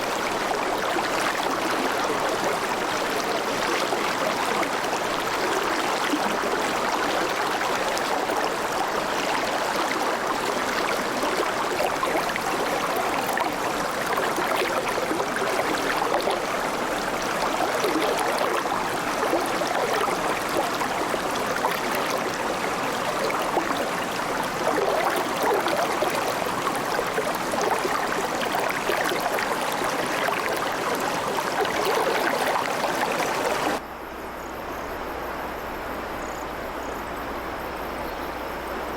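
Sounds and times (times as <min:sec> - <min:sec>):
river babbling over stones: 0:00.0 - 0:33.8.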